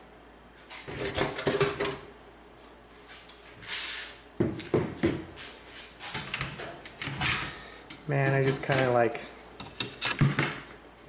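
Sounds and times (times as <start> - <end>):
rustle or scrape: 2.6 - 4.2
computer parts clattering: 8.2 - 9.0.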